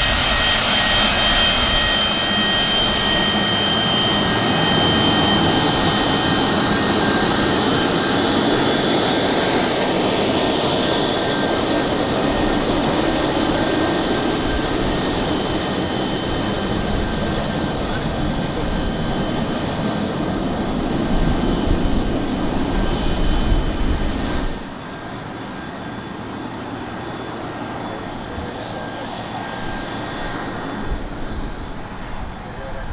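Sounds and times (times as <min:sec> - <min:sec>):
jet engine high whine: 0:00.0 - 0:32.9
jet engine low rumble: 0:00.0 - 0:32.9.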